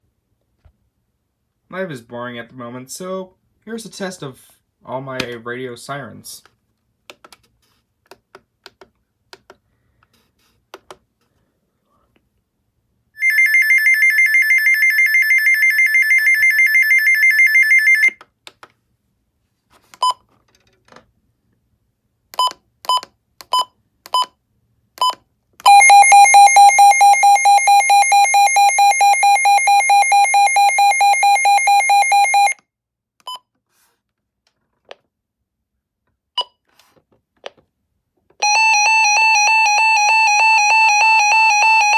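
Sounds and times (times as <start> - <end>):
high pulsing electronic siren: 25.7 - 32.6
low pulsing electronic siren: 25.7 - 32.6
short beeps: 25.7 - 32.6.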